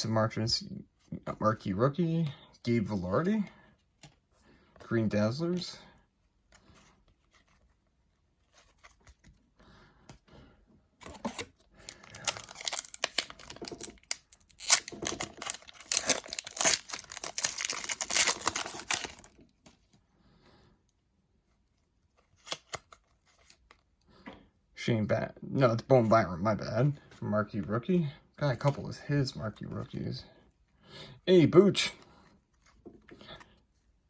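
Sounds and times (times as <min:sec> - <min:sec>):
faint rustling of cards: 0:00.8 - 0:24.7, 0:25.6 - 0:34.0
card pack wrapper tearing and crinkling: 0:11.0 - 0:19.4, 0:22.2 - 0:23.8.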